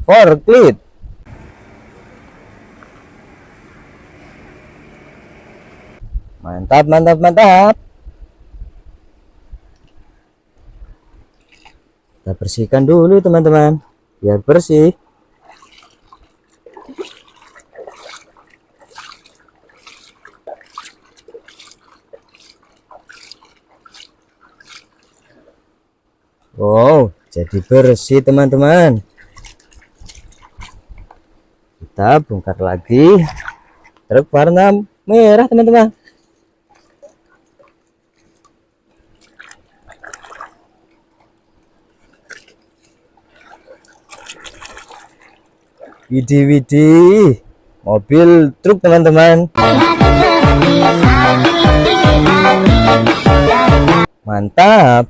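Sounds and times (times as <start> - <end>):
faint steady hum: 0.8 - 6.4
water splashing and dripping: 11.2 - 12.2, 15.3 - 26.5, 27.1 - 31.3, 33.1 - 34.1, 36.0 - 46.3.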